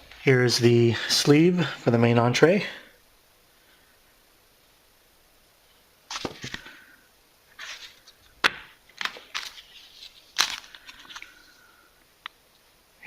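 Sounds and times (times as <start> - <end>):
plastic wrappers crinkling: 7.6 - 11.7.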